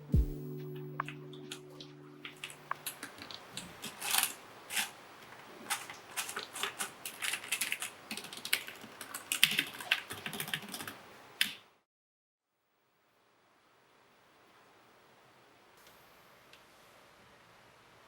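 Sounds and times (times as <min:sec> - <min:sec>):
typing on mechanical keyboard: 0:02.3 - 0:04.9, 0:05.7 - 0:11.6.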